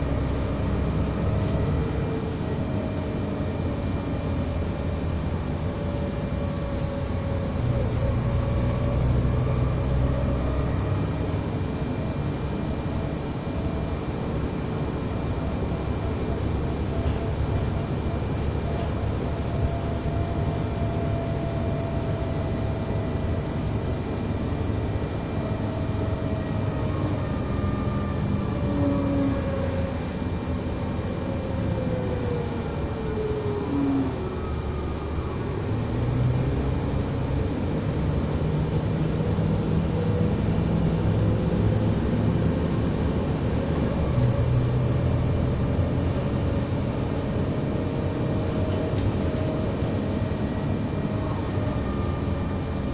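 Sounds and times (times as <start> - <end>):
bus engine rumble: 0.0 - 52.9.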